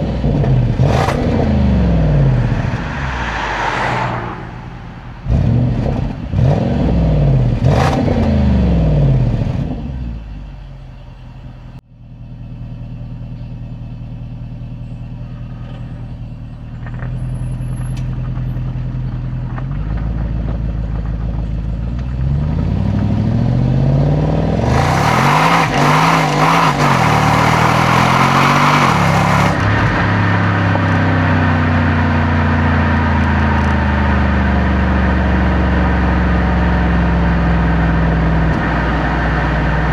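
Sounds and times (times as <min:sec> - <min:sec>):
loud exhaust rushing: 0:00.0 - 0:11.8, 0:20.8 - 0:39.9
car engine revving and idling: 0:00.0 - 0:39.9.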